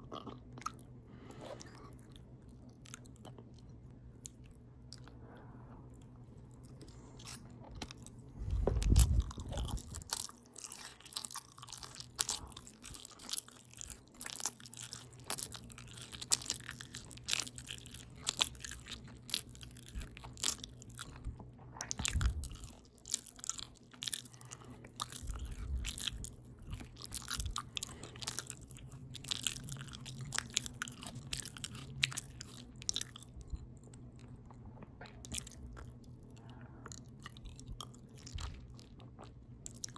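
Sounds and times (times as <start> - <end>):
wet open-mouth chewing: 5.9 - 39.9
low thuds: 8.4 - 10.0.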